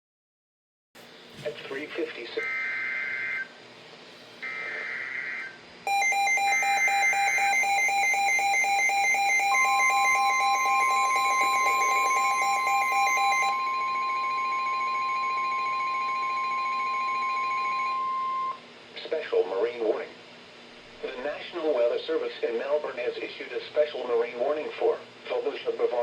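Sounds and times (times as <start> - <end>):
rapidly pulsing electronic alarm: 2.4 - 3.5, 4.4 - 18.6
steady single-pitch alarm tone: 2.4 - 3.5, 4.4 - 18.6.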